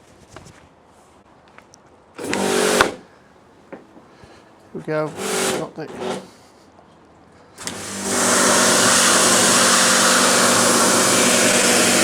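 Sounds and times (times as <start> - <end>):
pressure washer motor hum: 2.2 - 3.0, 5.0 - 6.3, 7.6 - 12.0
water jet spray hiss: 7.6 - 12.0.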